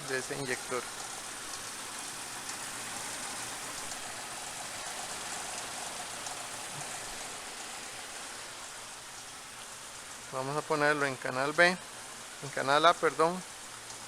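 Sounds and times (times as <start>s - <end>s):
car engine idling with hiss: 0.0s - 14.0s.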